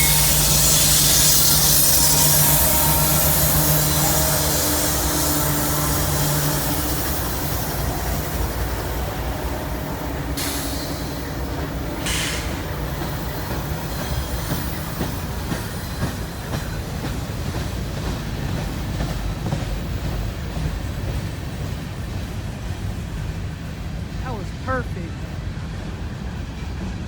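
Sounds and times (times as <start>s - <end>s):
hissing squeals: 0.0s - 8.8s
rail joint clicks: 0.0s - 21.9s
train cars rolling past: 0.0s - 27.0s.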